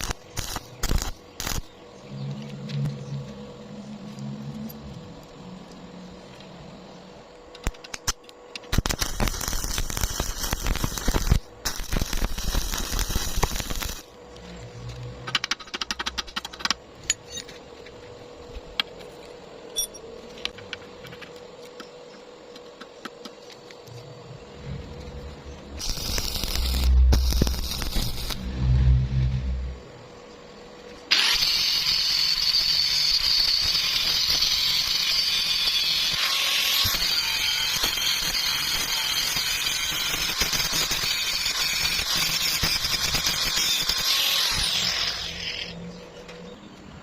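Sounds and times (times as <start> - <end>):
arc welding crackling: 0.0 - 6.6, 7.4 - 16.8, 22.8 - 29.9, 31.1 - 45.8
low rumble: 2.0 - 7.1, 24.1 - 30.3.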